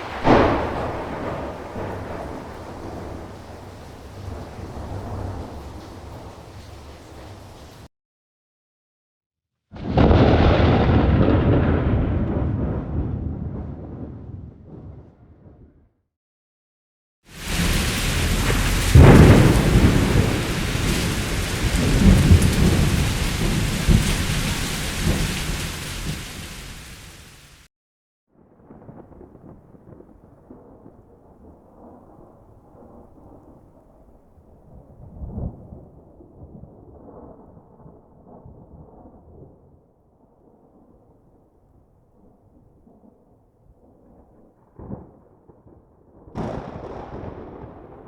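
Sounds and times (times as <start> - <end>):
rolling thunder: 0.0 - 7.9, 9.8 - 15.9, 17.4 - 27.3, 28.4 - 41.4, 42.2 - 48.0
steady rain: 0.0 - 7.9, 17.3 - 27.7.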